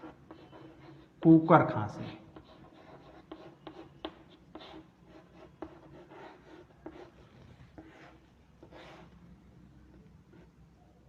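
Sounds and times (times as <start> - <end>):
writing tool scratching: 0.0 - 1.2, 2.4 - 9.1.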